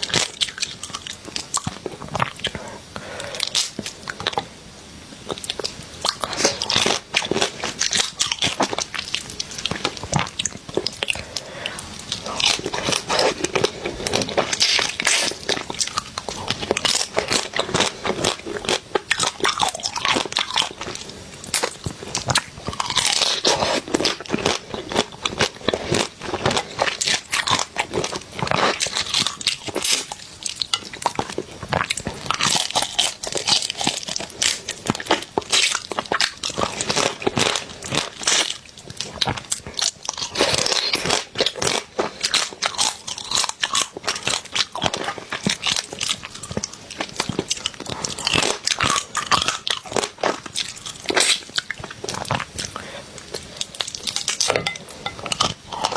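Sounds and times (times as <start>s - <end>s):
crunching and chewing: 0.0s - 4.5s, 5.1s - 55.9s.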